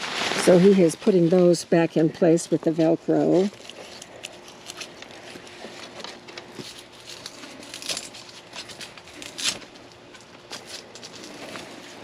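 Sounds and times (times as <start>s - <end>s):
nylon fabric rustling: 0.0s - 12.0s
velcro straps ripping: 3.5s - 5.4s, 6.6s - 12.0s.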